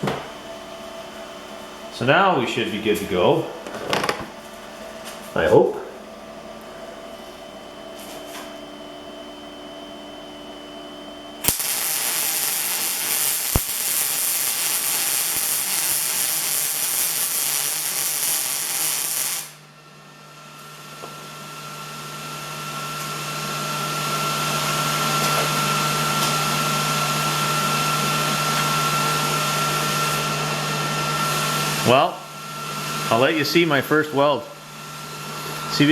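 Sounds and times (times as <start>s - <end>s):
hum with a whine: 0.1s - 35.9s
welding arc sizzling: 11.4s - 19.7s, 24.6s - 33.3s.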